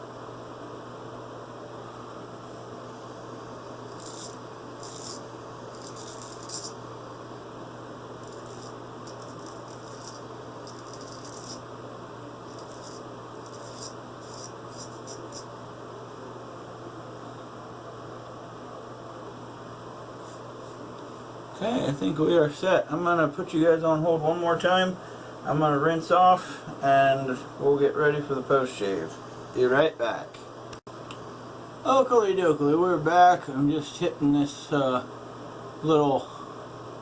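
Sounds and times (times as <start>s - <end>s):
razor scraping stubble: 3.8s - 6.8s, 8.2s - 11.7s, 12.5s - 15.5s, 20.2s - 20.8s.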